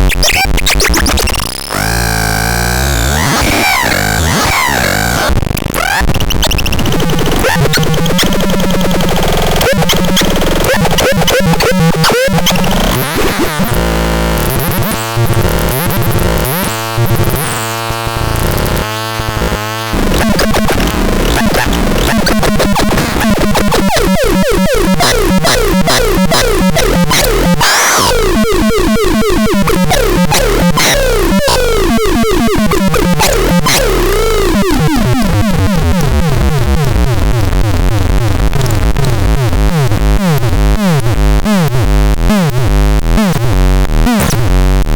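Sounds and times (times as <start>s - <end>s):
harsh synthesizer noise: 0.0s - 44.9s.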